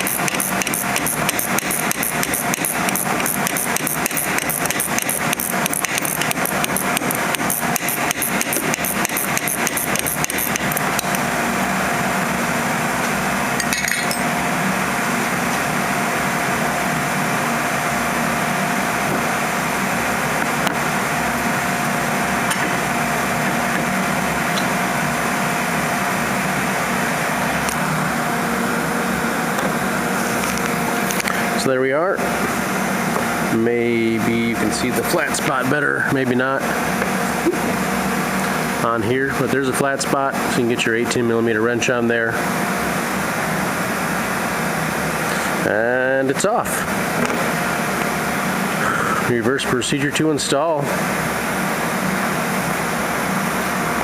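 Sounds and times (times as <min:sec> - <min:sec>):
wrench clicking: 0:00.0 - 0:11.2
steady hum: 0:00.0 - 0:54.0.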